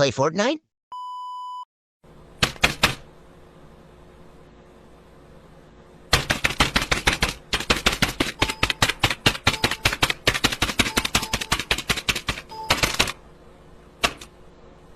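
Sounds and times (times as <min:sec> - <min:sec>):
rapid sharp clicks: 0:02.4 - 0:03.1, 0:06.1 - 0:13.2, 0:14.0 - 0:14.3.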